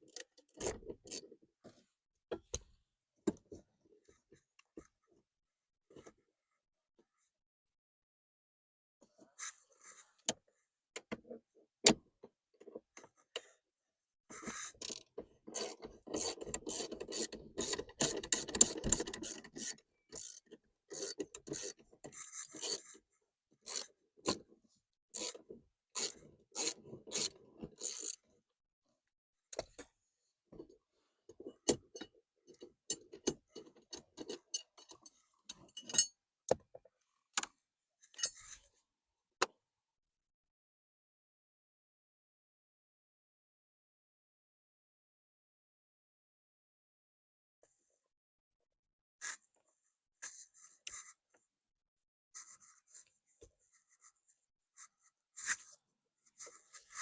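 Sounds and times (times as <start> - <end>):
plastic and metal parts rattling: 14.8 - 22.8
sharp clicks and knocks: 15.6 - 21.8.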